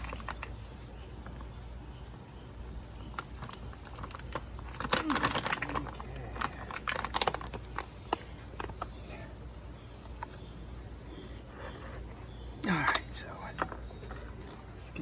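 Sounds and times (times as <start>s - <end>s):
objects clicking and clattering: 3.2s - 8.9s.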